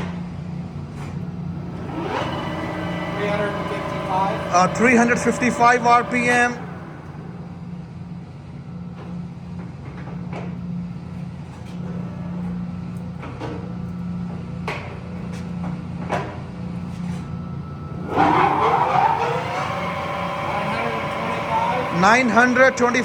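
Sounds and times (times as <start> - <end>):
lathe running: 1.2 - 7.8, 17.9 - 23.0.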